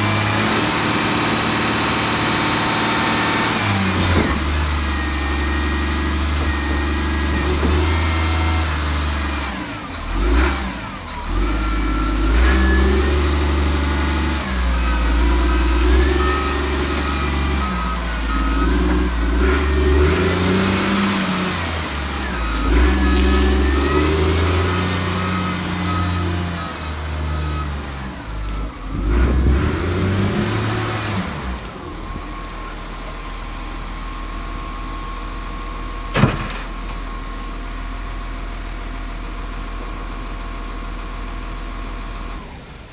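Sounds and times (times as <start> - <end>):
diesel engine revving: 0.0 - 42.9
evenly spaced beeping: 11.6 - 28.4.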